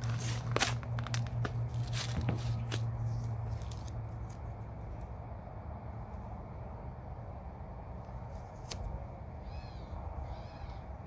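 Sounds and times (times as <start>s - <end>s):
film snips and crinkles: 0.0s - 4.4s.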